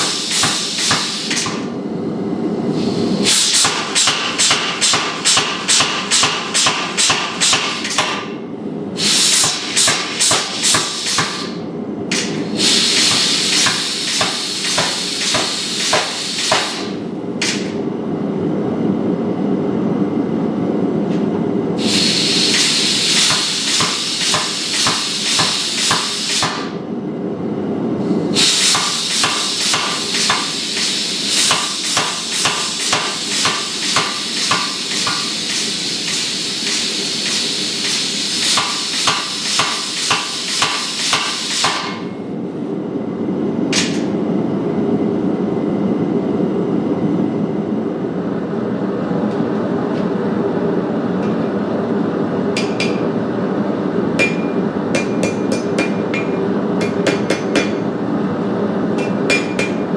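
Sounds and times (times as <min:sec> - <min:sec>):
hammer striking steel on anvil: 0:03.5 - 0:08.4, 0:13.2 - 0:17.7, 0:23.2 - 0:26.8, 0:31.5 - 0:35.3, 0:38.5 - 0:42.1, 0:52.6 - 0:53.0, 0:54.2 - 0:57.8, 0:59.0 - 0:59.9.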